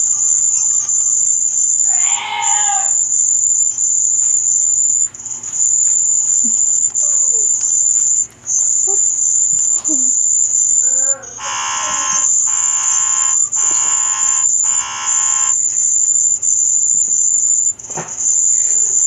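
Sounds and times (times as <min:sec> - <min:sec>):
wavering voice-like sound: 0:10.8 - 0:15.6.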